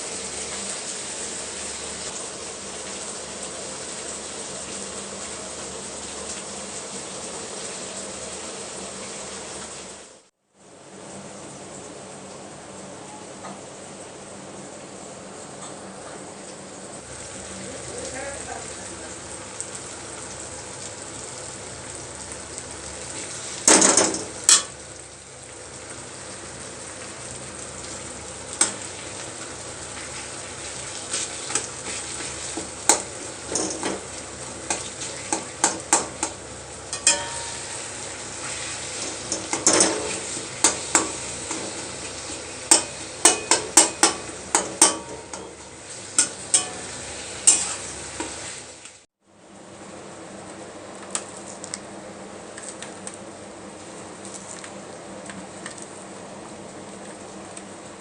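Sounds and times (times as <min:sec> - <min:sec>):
food sizzling in a frying pan: 0:00.0 - 0:15.0, 0:16.5 - 0:58.0
utensil scraping a pan: 0:46.2 - 0:48.5.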